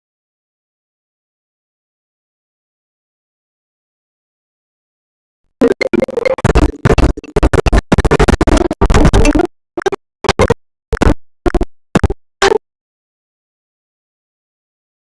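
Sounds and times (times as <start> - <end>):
ringtone music with dj scratching: 5.6 - 12.6.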